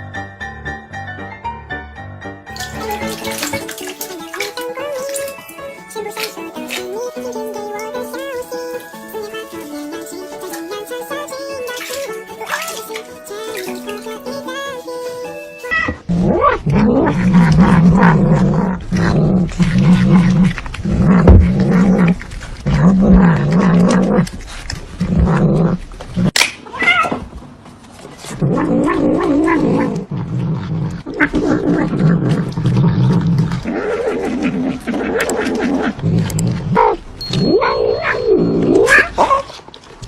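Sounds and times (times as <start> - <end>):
cat yowling: 26.7 - 27.2, 37.5 - 39.5.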